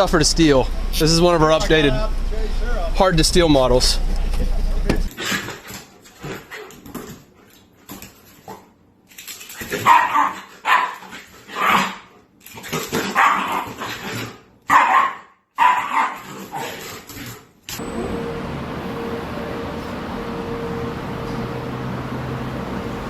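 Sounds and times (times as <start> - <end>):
dog barking: 9.8 - 12.1, 13.0 - 14.0, 14.7 - 16.7.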